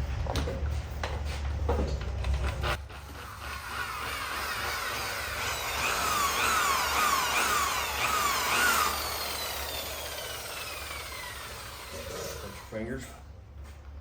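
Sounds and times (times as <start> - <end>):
power tool motor whining: 2.8 - 12.8.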